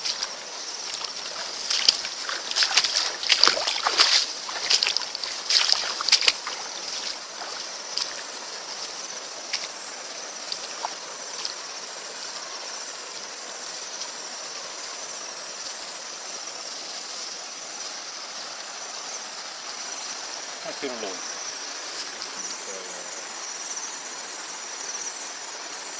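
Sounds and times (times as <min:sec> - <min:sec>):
water splashing: 0:00.0 - 0:11.6
water trickling: 0:00.0 - 0:14.8
high-pitched insect chorus: 0:00.0 - 0:25.9.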